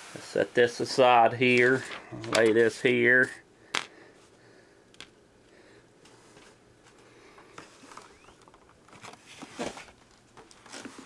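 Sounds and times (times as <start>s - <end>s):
paper packaging rustling: 7.6s - 11.0s.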